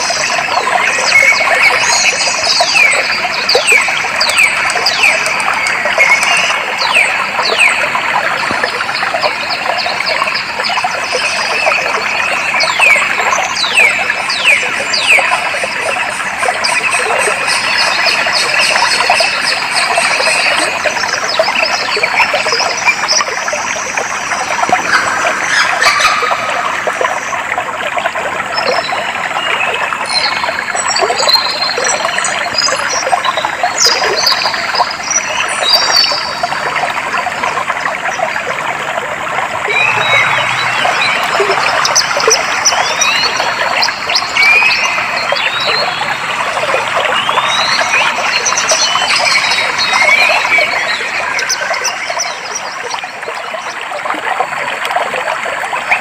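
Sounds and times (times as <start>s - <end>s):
birds twittering: 0.0s - 38.6s, 39.4s - 53.8s
water flowing: 0.0s - 56.0s
birds calling: 16.2s - 27.5s, 39.4s - 52.7s.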